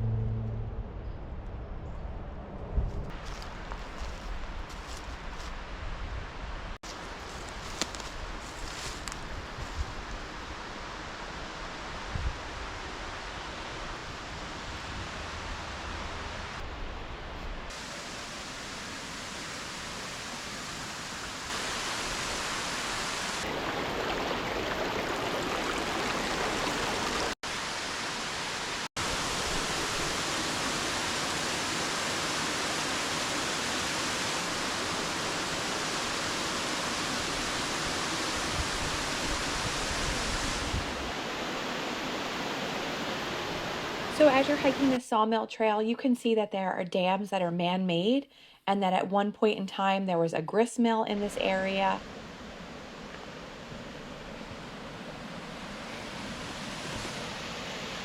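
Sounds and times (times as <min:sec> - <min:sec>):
water rushing over small waterfalls: 0:17.7 - 0:45.0.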